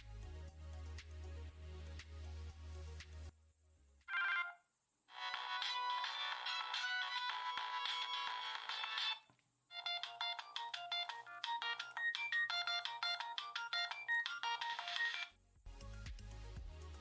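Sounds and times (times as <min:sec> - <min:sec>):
mobile phone ringtone: 0:04.1 - 0:15.3.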